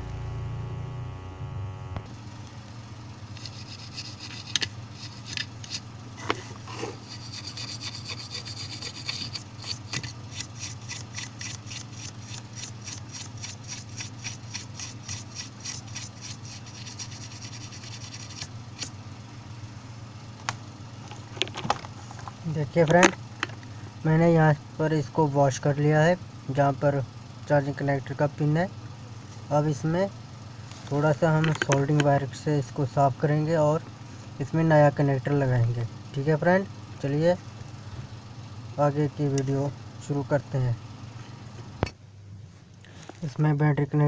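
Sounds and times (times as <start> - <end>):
steady low hum: 0.0 - 44.0
rapid scrubbing strokes: 3.4 - 18.9.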